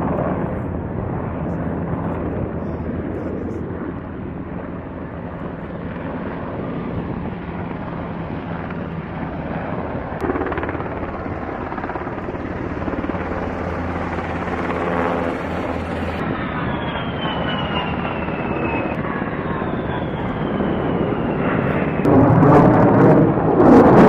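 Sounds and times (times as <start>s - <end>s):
aircraft engine drone: 0.0s - 24.0s.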